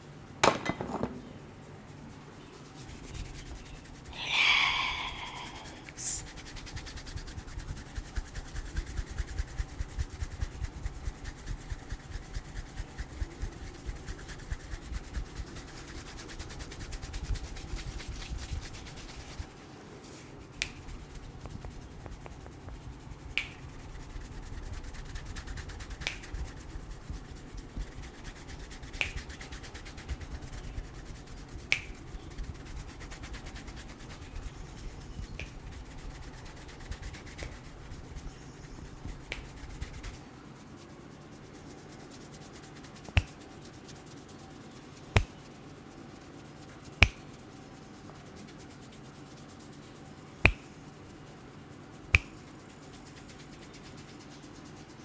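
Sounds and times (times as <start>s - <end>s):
hands rubbing a head: 1.9s - 54.9s
sharp snaps: 4.2s - 6.3s, 20.6s - 21.1s, 23.4s - 23.8s, 25.9s - 26.5s, 28.2s - 30.7s, 31.7s - 32.2s, 35.3s - 35.7s, 37.0s - 37.7s, 39.0s - 40.2s, 43.1s - 43.5s, 45.2s - 45.4s, 47.0s - 47.4s, 50.4s - 50.8s, 52.1s - 52.5s.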